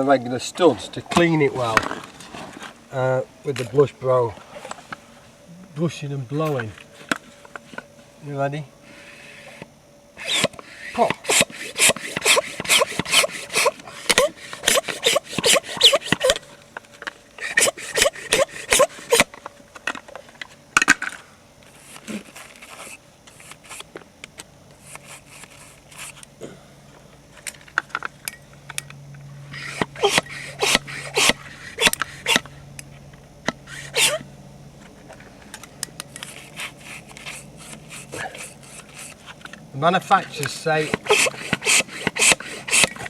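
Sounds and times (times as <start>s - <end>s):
wire brush scraping in hole: 10.2s - 16.4s, 17.4s - 19.2s, 29.5s - 32.5s, 40.4s - 43.0s.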